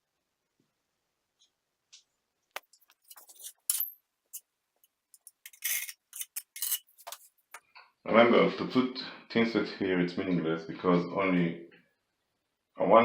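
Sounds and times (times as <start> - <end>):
tools scraping tile: 2.9 - 3.9, 5.2 - 7.4.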